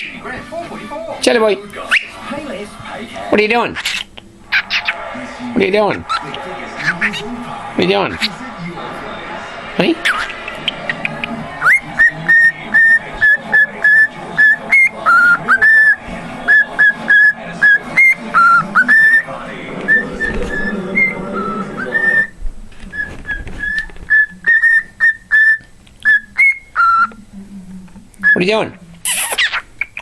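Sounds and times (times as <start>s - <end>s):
cockatiel whistling: 1.9s - 2.2s, 3.8s - 5.0s, 5.7s - 7.3s, 10.0s - 19.3s, 19.9s - 27.2s, 28.2s - 30.0s.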